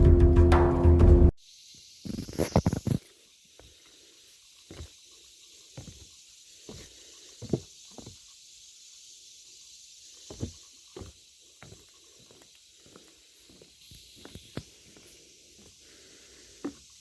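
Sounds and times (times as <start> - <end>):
faint high hiss: 1.4 - 17.0
footsteps crunching on trail: 4.6 - 5.1, 5.7 - 8.2, 10.2 - 17.0.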